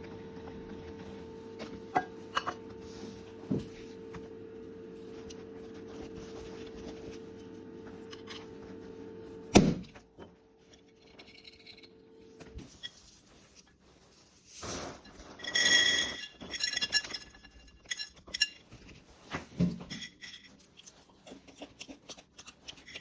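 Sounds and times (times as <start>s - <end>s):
popcorn machine hum: 0.0s - 12.7s.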